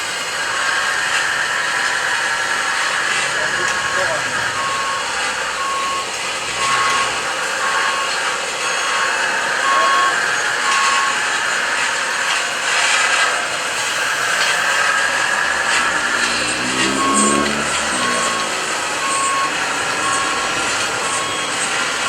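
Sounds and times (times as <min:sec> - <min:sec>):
steady mechanical whine: 0:00.0 - 0:22.0
reversing beeper short beeps: 0:03.1 - 0:11.4, 0:13.8 - 0:22.0.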